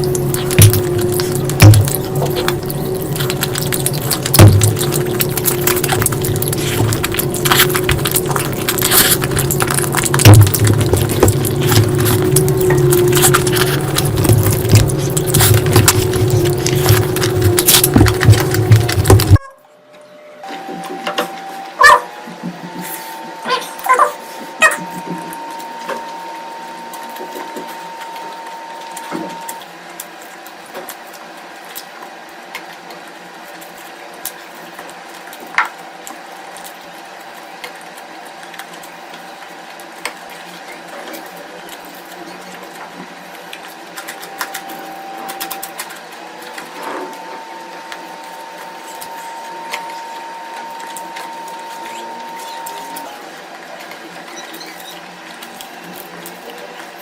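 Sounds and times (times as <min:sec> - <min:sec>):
wet chewing: 0:00.0 - 0:19.5
thin high hum: 0:00.0 - 0:29.6.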